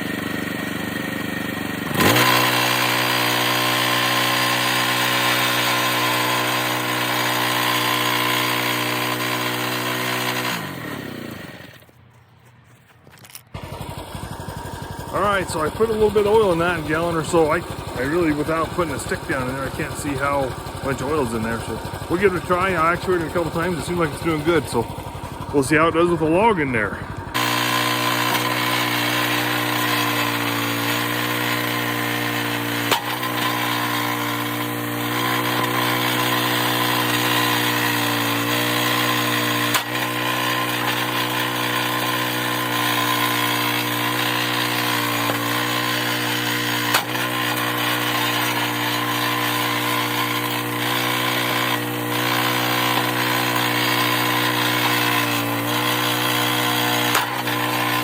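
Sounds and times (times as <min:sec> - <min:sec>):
small gasoline engine running: 0:00.0 - 0:12.0, 0:13.1 - 0:58.0
sharp knocks of logs splitting: 0:32.8 - 0:34.4, 0:45.1 - 0:47.2.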